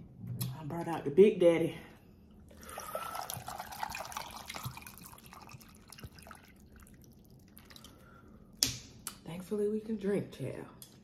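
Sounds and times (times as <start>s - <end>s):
drink being poured: 2.5s - 8.2s.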